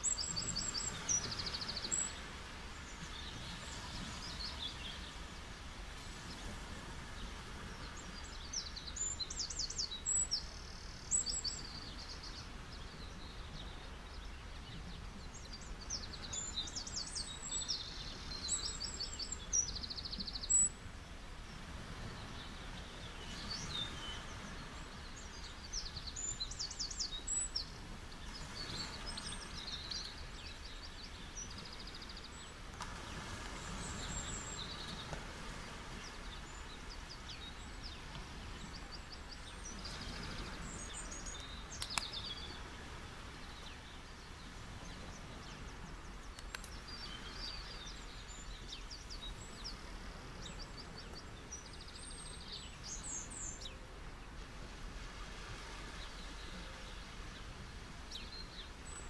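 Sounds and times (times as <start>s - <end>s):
ocean waves washing onto beach: 0.0s - 59.0s
small birds chirping: 7.2s - 20.8s, 21.5s - 54.4s.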